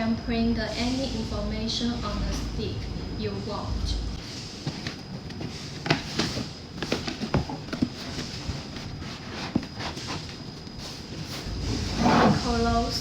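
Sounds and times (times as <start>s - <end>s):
paper packaging tapping and rustling: 4.6s - 10.4s.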